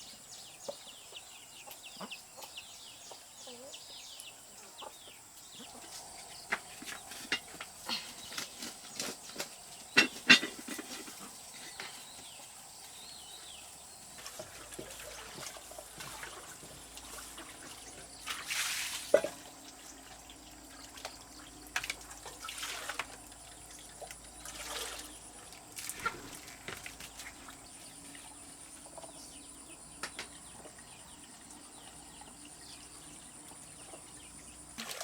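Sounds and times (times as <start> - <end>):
water splashing: 14.2 - 27.7, 34.8 - 35.0.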